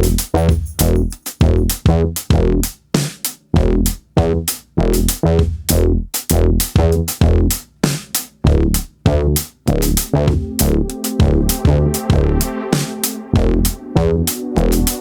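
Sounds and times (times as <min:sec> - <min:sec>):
electronic music with drum machine: 0:00.0 - 0:02.0, 0:08.5 - 0:15.0.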